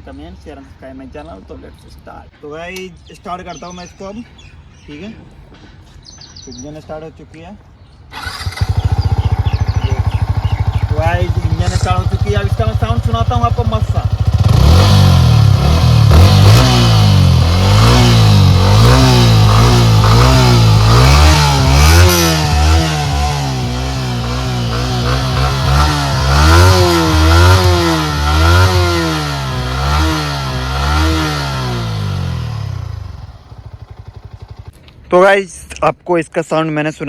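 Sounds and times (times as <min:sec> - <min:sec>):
motorcycle engine revving: 0:08.1 - 0:34.9.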